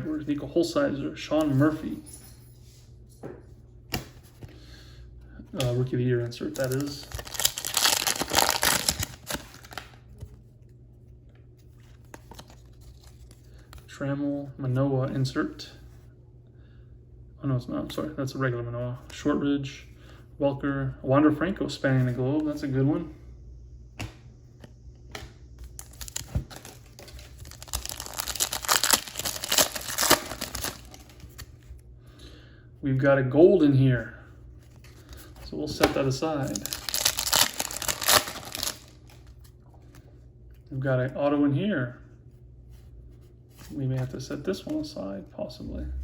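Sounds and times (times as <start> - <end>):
foil wrapper crinkling: 5.6 - 10.3, 25.6 - 31.7, 34.8 - 39.5.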